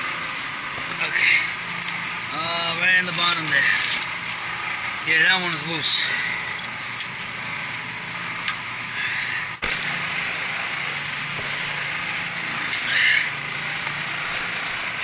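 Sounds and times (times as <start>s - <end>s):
machinery humming and hissing: 0.0s - 15.0s.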